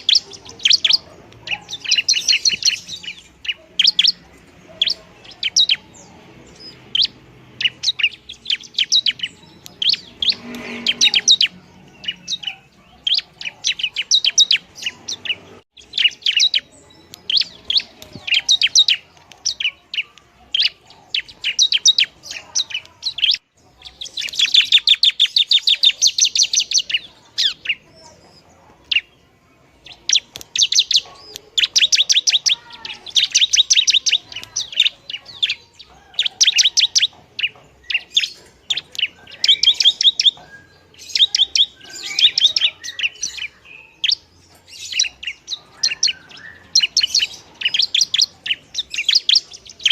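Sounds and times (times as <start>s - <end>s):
bird chirping and trilling: 0.0s - 49.9s.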